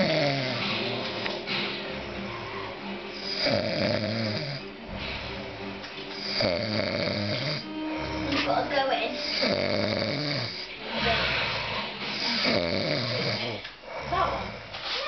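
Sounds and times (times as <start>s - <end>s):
man snoring: 0.0s - 0.6s, 3.2s - 4.7s, 6.2s - 8.3s, 9.2s - 14.7s.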